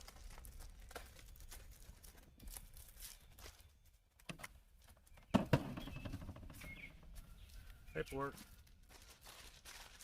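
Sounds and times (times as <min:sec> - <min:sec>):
plastic bag crinkling: 0:00.0 - 0:03.6, 0:08.5 - 0:10.0.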